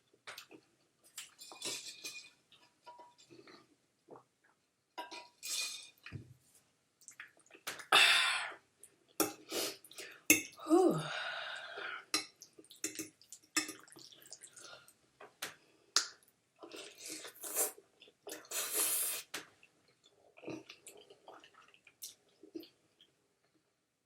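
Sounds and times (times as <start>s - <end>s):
person chewing food wetly: 7.0s - 7.9s, 12.2s - 15.4s, 19.6s - 23.1s.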